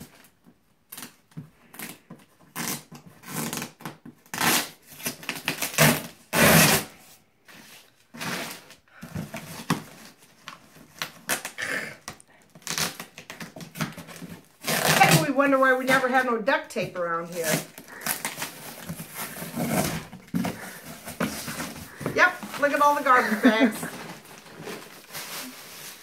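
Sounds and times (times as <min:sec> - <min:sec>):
plastic bags ripping: 0:00.9 - 0:07.0, 0:10.8 - 0:16.4, 0:17.2 - 0:26.0.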